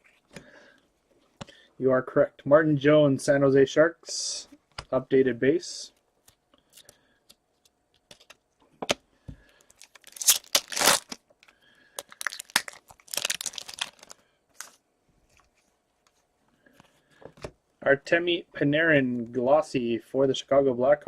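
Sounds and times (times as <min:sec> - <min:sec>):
wrapper tearing and crinkling: 0:09.8 - 0:11.2, 0:12.0 - 0:14.8.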